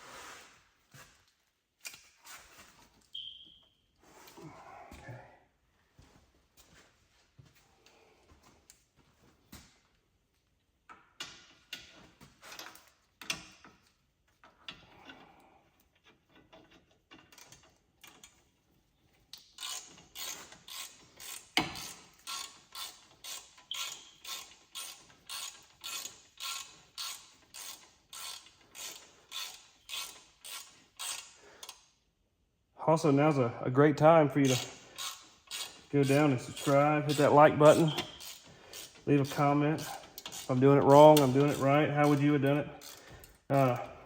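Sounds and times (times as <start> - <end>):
ratchet clicking: 19.3 - 31.8, 34.4 - 40.5, 41.1 - 42.2, 42.8 - 43.8.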